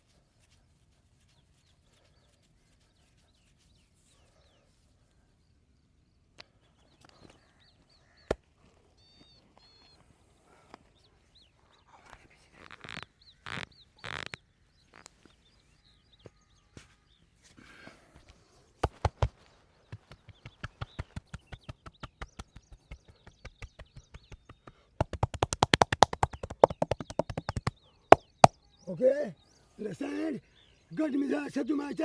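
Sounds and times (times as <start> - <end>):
faint bird chirps: 0.0 - 18.8, 19.4 - 25.1
hands tapping body in massage: 18.8 - 28.5.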